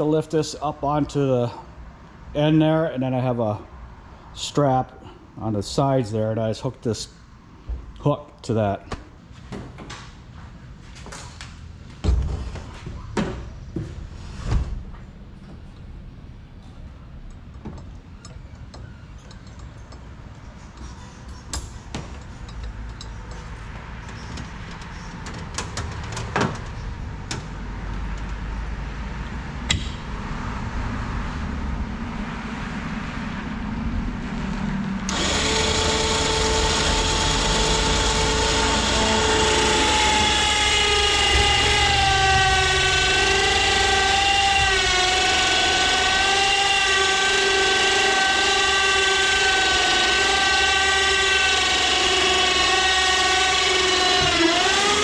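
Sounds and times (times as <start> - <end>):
loader motor running: 35.1 - 55.0
whining motor tone: 35.1 - 55.0.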